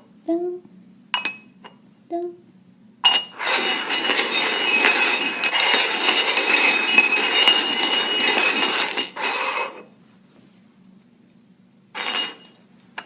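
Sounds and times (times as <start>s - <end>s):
cups clinking and scraping: 3.0s - 9.9s, 12.0s - 13.0s.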